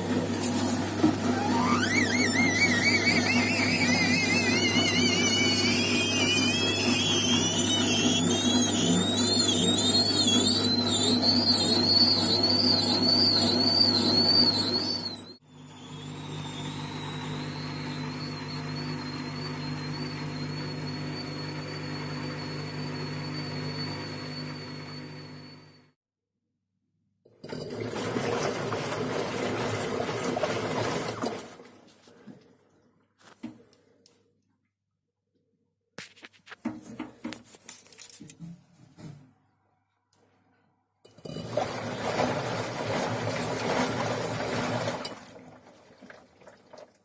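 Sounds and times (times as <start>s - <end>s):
washing machine squealing: 0.8s - 26.0s, 27.3s - 31.8s, 41.1s - 46.8s.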